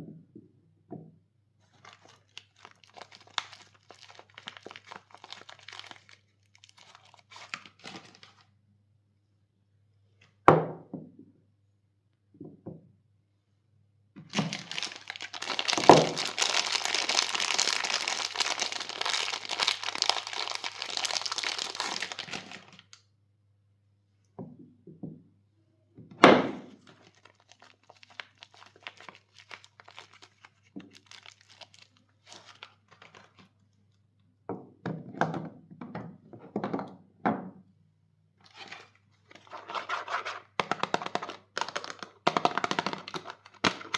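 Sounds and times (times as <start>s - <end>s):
wrapper crinkling and tearing: 1.7s - 8.4s, 14.3s - 23.0s, 26.7s - 33.5s, 38.5s - 43.9s.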